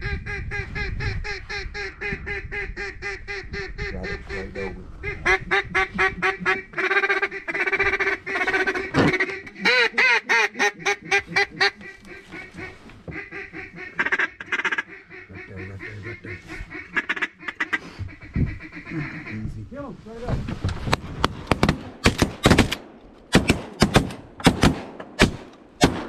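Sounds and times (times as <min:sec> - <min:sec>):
duck call quacks: 0:00.0 - 0:19.5.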